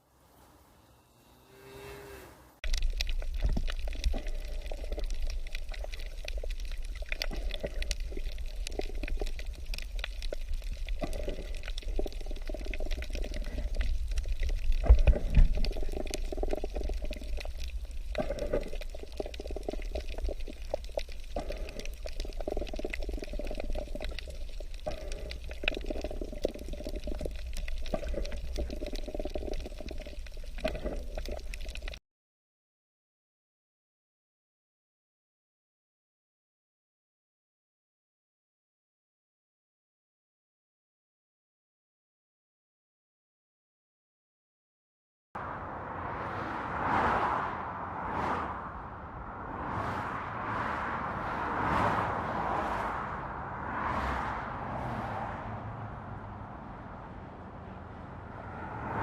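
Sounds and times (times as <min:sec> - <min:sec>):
water pouring and splashing: 0:02.6 - 0:32.0
low rumble: 0:45.4 - 0:59.0.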